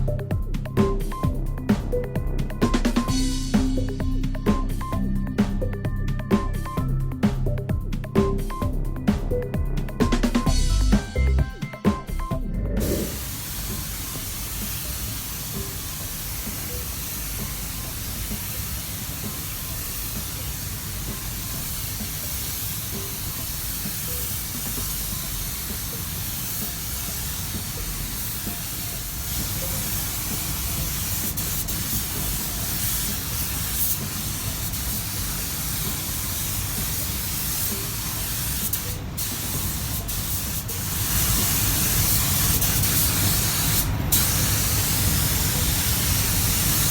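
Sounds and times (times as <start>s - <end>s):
spray gun hissing: 12.8s - 46.9s.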